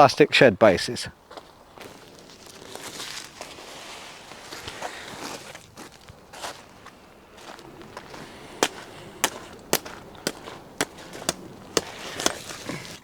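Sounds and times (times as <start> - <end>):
faint outdoor background noise: 0.0 - 13.0.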